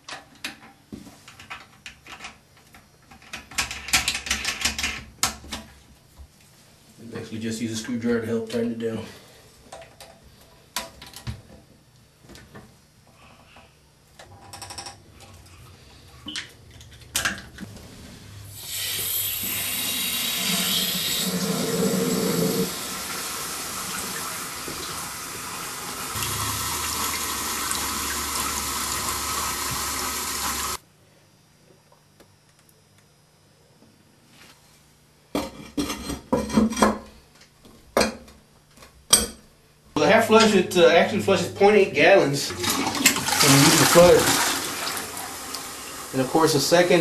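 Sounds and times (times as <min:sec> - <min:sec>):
toilet flushing water rushing: 0:18.5 - 0:30.8, 0:42.4 - 0:47.0.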